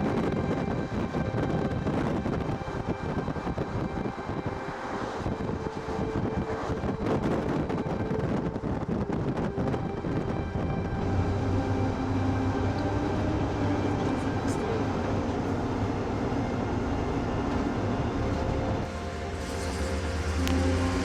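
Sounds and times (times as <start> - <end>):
car engine drone: 0.0 - 21.0
road noise: 0.0 - 21.0.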